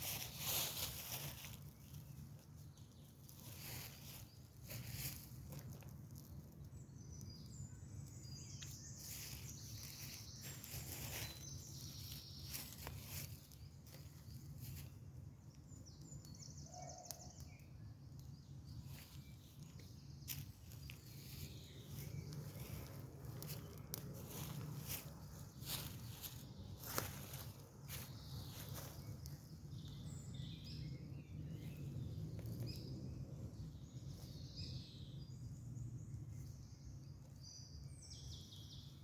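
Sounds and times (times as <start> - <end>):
songbirds chirping and trilling: 0.0 - 39.0
wood fire crackling and popping: 1.5 - 8.8, 22.0 - 25.4, 28.6 - 30.9.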